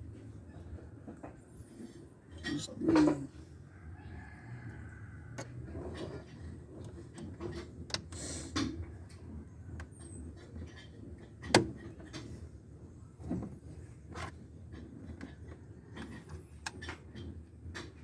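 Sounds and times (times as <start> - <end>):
sharp knocks and clicks: 5.4 - 12.4.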